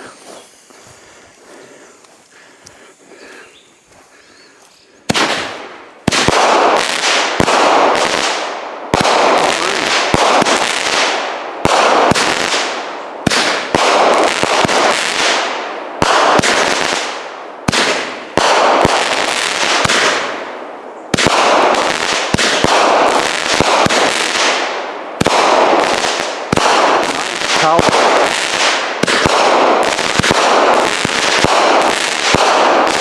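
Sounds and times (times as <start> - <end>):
firework reports: 0.0 - 2.0, 5.1 - 15.4, 25.2 - 33.0
hissing crackling firework tails: 0.0 - 4.1.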